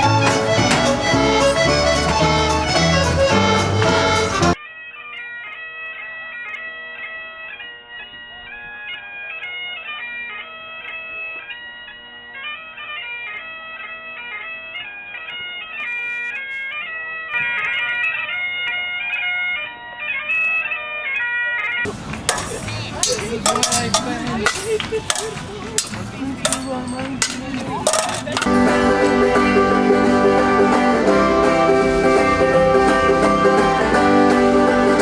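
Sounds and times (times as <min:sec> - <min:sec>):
bagpipes playing a tune: 0:00.0 - 0:35.0.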